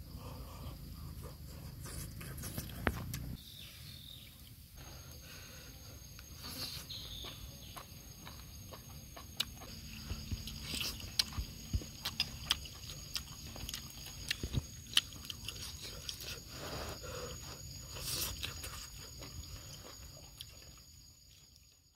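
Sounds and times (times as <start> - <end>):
high insect buzz: 0.0 - 21.9
person chewing food: 6.9 - 21.8.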